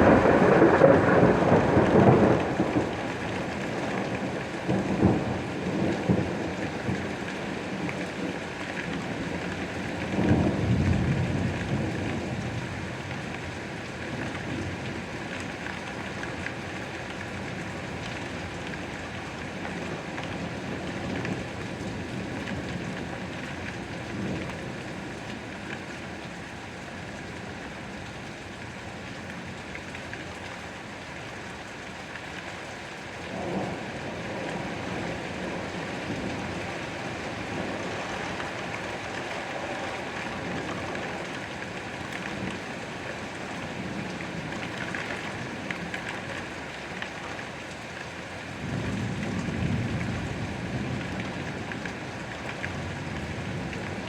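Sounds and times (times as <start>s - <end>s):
rolling thunder rumbles: 0.0s - 7.8s
steady rain falling: 0.0s - 54.0s.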